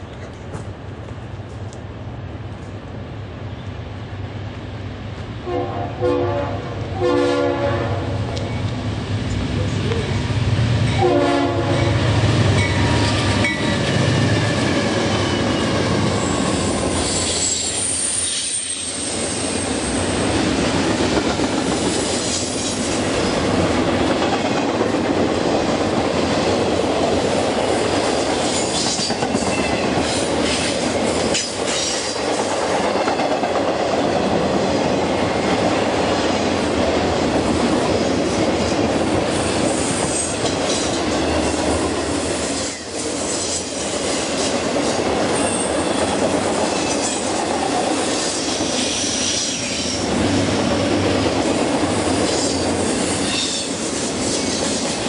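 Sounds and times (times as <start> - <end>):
train horn: 5.4 - 8.2, 11.0 - 12.0
high wheel squeal: 14.3 - 20.0.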